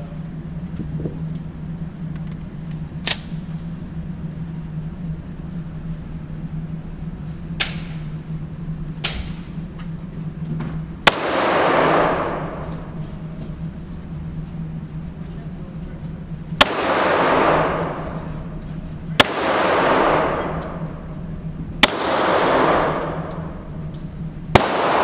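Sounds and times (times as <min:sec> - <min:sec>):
steady low hum: 0:00.0 - 0:25.0
handgun shots: 0:07.6 - 0:08.1, 0:11.1 - 0:13.1, 0:16.6 - 0:18.6, 0:19.2 - 0:23.9, 0:24.5 - 0:25.0.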